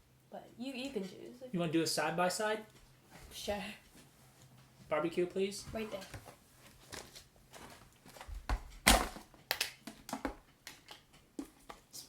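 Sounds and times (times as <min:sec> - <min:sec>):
chip can crackles and clicks: 0:09.5 - 0:11.0.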